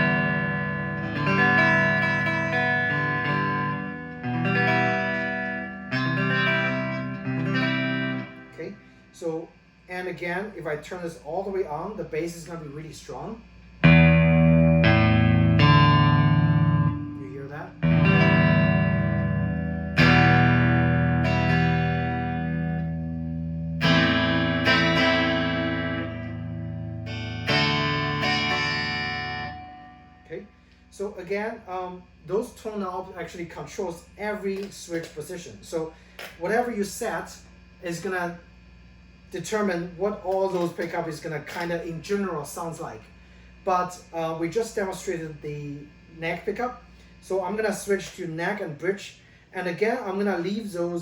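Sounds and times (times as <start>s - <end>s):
electric guitar chords strummed: 0.0s - 9.0s, 13.8s - 30.8s.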